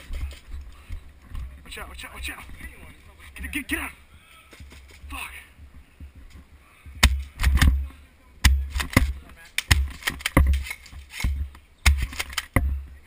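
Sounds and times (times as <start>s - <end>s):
sharp cracks with low thuds: 6.9s - 13.0s.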